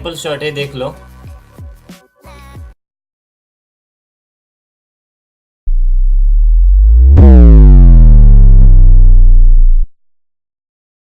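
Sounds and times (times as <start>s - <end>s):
sharp synthesized hit: 5.7s - 9.9s
tone sliding down in pitch: 5.7s - 9.9s
deep bass drone: 5.7s - 10.0s.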